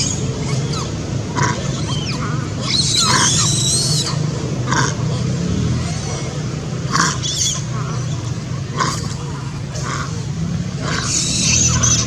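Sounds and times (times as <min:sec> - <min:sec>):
monkey screeching and squealing: 0:00.0 - 0:05.0, 0:07.0 - 0:08.2, 0:10.8 - 0:12.0.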